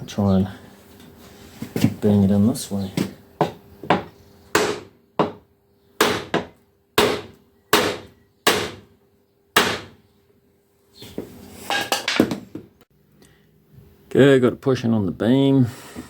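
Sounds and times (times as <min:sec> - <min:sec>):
rubber mallet striking wood: 0:03.4 - 0:05.4, 0:06.0 - 0:08.8, 0:09.6 - 0:10.0.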